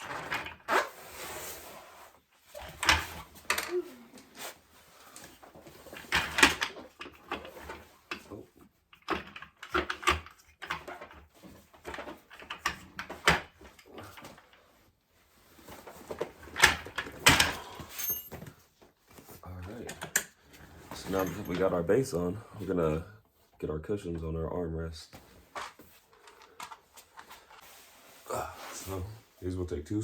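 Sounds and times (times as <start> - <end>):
chair parts knocking and rattling: 0.0 - 0.8, 2.5 - 3.9, 5.2 - 14.6, 15.6 - 18.6, 19.2 - 21.8.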